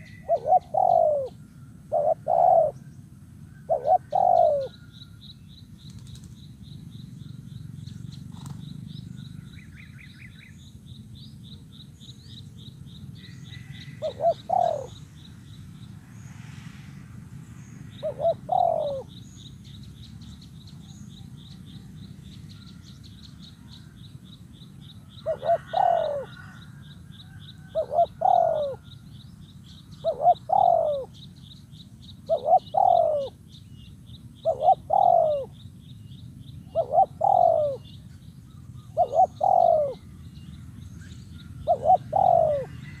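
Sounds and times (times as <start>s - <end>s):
dove cooing: 0.0s - 2.8s, 3.6s - 4.9s, 13.5s - 15.0s, 17.9s - 19.2s, 25.0s - 28.9s, 30.0s - 31.2s, 32.2s - 33.5s, 34.4s - 35.6s, 36.7s - 38.0s, 38.6s - 40.1s, 41.4s - 43.0s.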